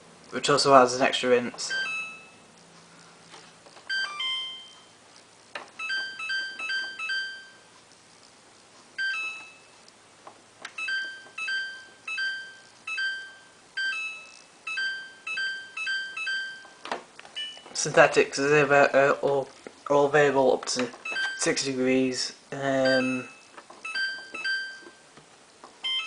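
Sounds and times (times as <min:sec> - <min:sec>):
short electronic beeps: 0:01.7 - 0:02.5, 0:21.0 - 0:21.5, 0:22.9 - 0:24.9.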